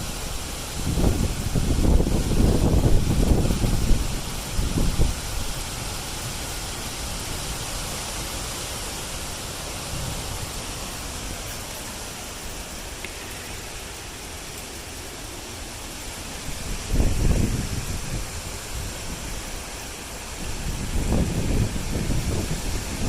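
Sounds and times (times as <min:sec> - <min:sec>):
wind buffeting on microphone: 0:00.0 - 0:08.4, 0:15.8 - 0:23.0
strong wind gusts rushing: 0:00.0 - 0:23.0.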